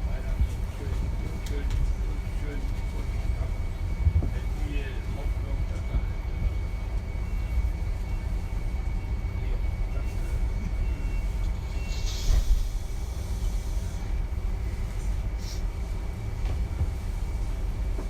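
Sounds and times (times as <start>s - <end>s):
train rolling rumble: 0.0s - 18.0s
brief high hiss: 11.9s - 12.8s.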